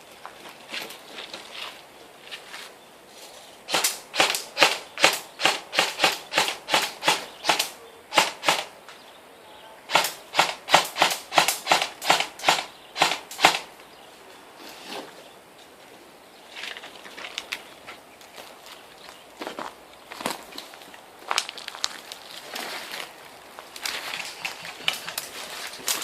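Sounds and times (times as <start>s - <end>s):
airsoft gun shots: 3.7s - 8.7s, 9.9s - 13.7s.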